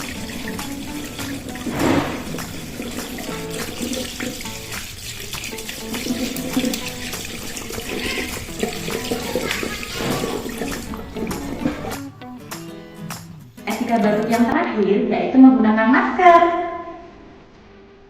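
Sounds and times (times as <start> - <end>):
tap water running into sink: 0.0 - 12.6
hands washing under water: 0.0 - 13.2
background music: 0.0 - 15.0.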